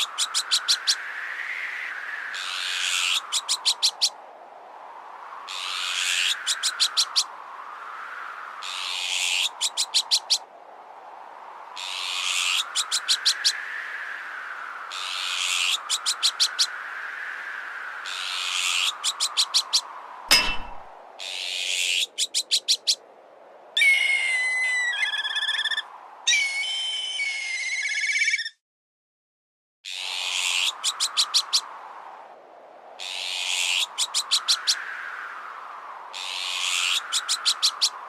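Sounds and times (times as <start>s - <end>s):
wind whistling in gusts: 0.0s - 28.1s, 29.9s - 38.0s
magpie alarm calls: 23.8s - 28.5s.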